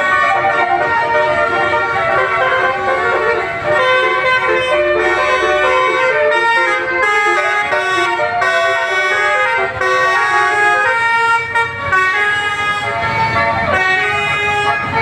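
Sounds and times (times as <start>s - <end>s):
bus air horns playing a tune: 0.0s - 15.0s.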